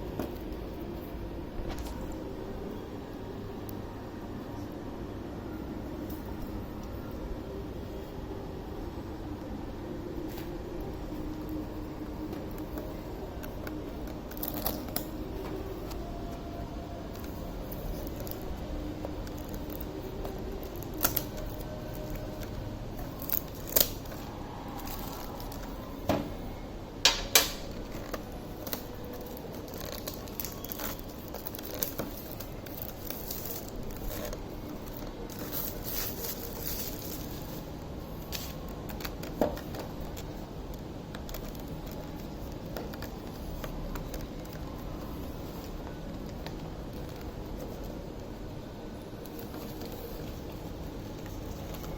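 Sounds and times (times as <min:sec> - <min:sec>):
packaging rustling: 0:11.1 - 0:26.0, 0:27.4 - 0:51.9.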